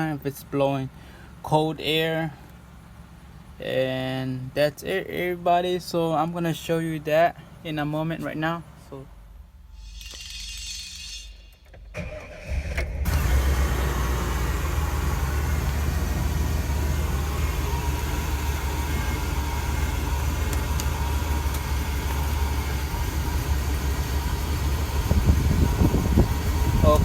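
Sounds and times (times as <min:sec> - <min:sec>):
low engine hum: 0:00.0 - 0:09.7, 0:12.0 - 0:27.0
blower fan rushing air: 0:13.0 - 0:27.0
clicks: 0:20.4 - 0:22.3.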